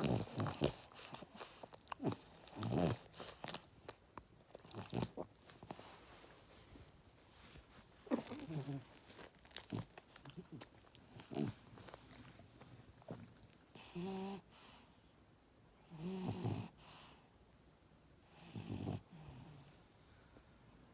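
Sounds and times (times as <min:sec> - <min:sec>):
puppy snoring: 0:00.0 - 0:06.2, 0:08.0 - 0:12.4, 0:13.0 - 0:14.8, 0:15.8 - 0:17.2, 0:18.3 - 0:19.8.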